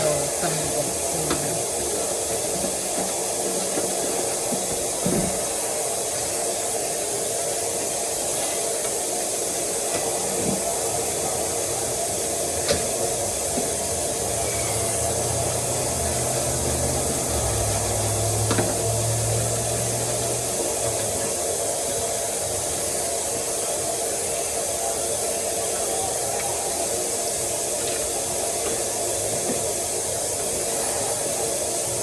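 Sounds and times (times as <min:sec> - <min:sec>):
tap water running into sink: 0:09.8 - 0:22.4.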